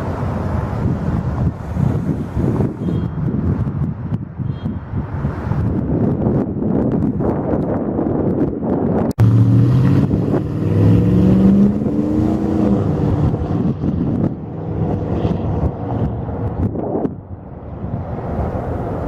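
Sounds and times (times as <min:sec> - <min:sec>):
wind on microphone: 0:00.0 - 0:19.0
rising tones: 0:09.2 - 0:13.8.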